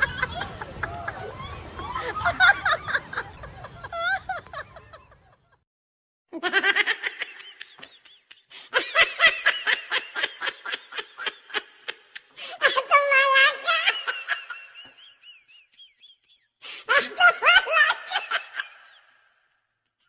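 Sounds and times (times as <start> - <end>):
person laughing hard: 6.4 - 15.1, 16.8 - 19.0.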